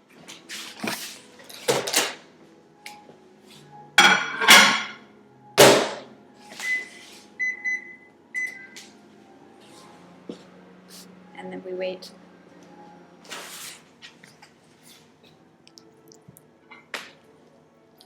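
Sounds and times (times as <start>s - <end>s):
plate clattering: 4.0s - 5.0s.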